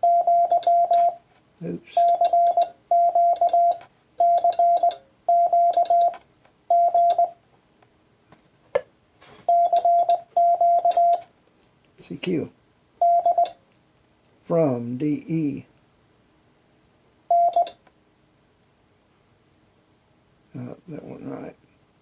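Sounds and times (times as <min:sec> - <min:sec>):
morse code beeps: 0:00.0 - 0:01.2, 0:02.0 - 0:07.4, 0:09.5 - 0:11.3, 0:13.0 - 0:13.6, 0:17.3 - 0:17.8
telegraph key clicks: 0:02.0 - 0:05.0, 0:06.9 - 0:07.3.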